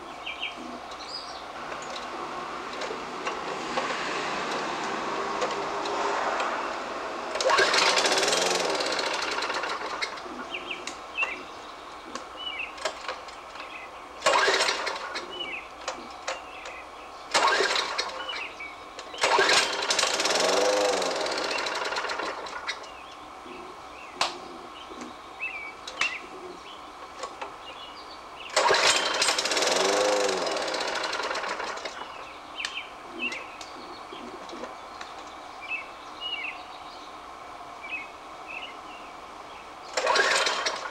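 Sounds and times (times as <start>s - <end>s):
lawn mower engine starting and stalling: 1.6s - 11.0s, 12.8s - 22.9s, 28.5s - 32.3s, 39.9s - 40.9s.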